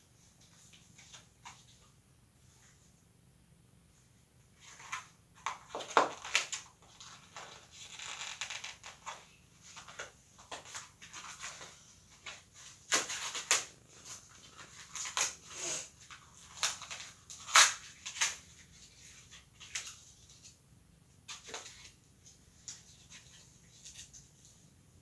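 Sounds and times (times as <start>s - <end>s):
packaging crinkling and rustling: 4.7s - 15.4s, 16.0s - 20.4s.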